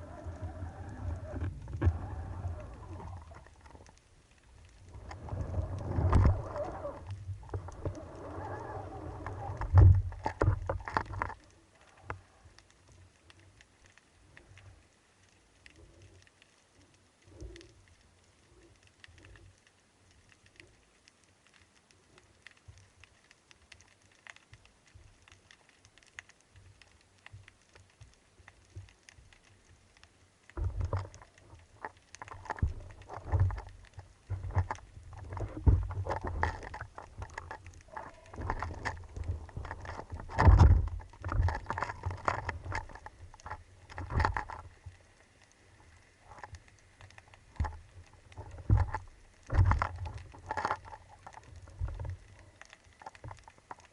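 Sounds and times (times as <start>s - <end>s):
muffled water sloshing: 0.0s - 11.7s, 30.6s - 53.9s
faint scattered clicks: 0.0s - 53.9s.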